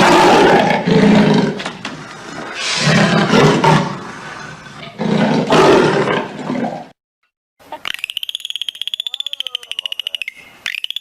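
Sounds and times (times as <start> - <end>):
animal roar: 0.0 - 6.9
high-pitched pulsing animal trill: 7.7 - 11.0.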